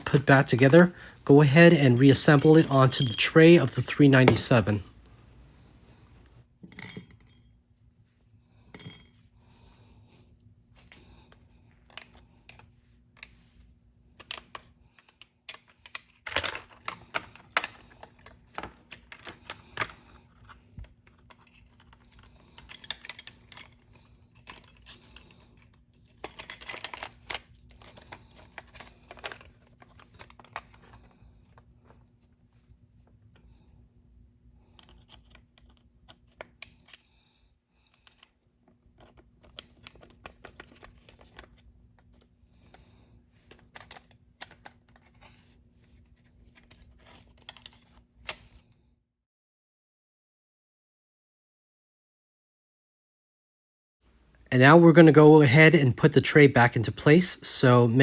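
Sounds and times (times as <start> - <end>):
metal and plastic parts clinking: 1.7 - 4.7, 15.5 - 20.0, 21.2 - 30.9.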